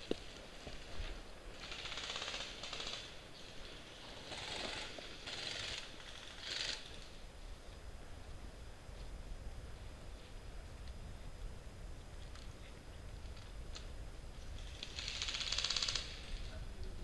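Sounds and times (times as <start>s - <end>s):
airsoft rifle full-auto bursts: 1.6s - 3.2s, 14.6s - 16.3s.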